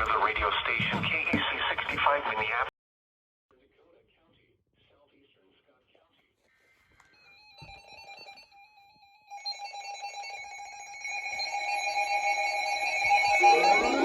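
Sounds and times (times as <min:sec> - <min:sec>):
pulsing alarm tone: 0:10.0 - 0:14.0
wailing siren rising in pitch: 0:12.3 - 0:14.0.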